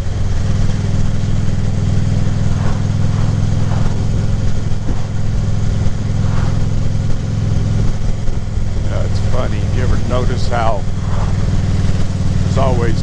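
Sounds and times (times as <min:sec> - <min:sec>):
motorcycle engine running: 0:00.0 - 0:13.0
wind and road noise: 0:00.0 - 0:13.0.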